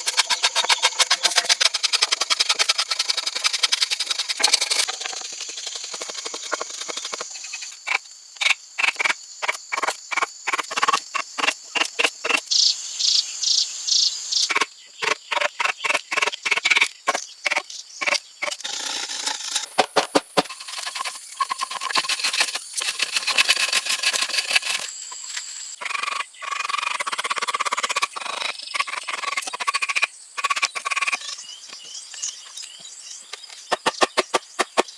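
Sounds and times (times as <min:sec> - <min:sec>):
hand tool working wood: 0:00.0 - 0:07.4, 0:18.4 - 0:24.9, 0:33.6 - 0:34.9.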